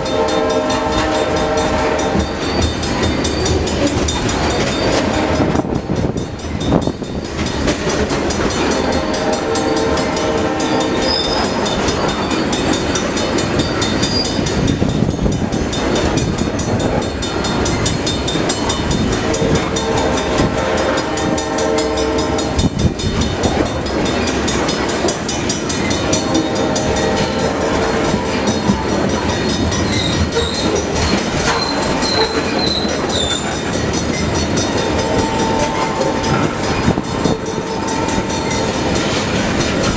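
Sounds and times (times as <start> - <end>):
locomotive horn blasts: 0.0 - 2.7, 4.5 - 6.2, 8.6 - 11.9, 19.2 - 23.8, 26.0 - 29.8, 34.8 - 39.1
train wheels clattering: 0.0 - 39.9.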